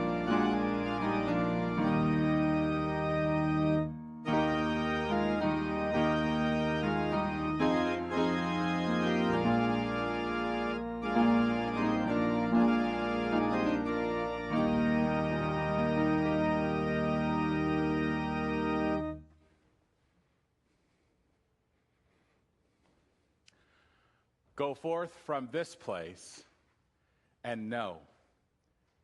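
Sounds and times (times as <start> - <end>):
church organ chords: 0.0 - 19.3.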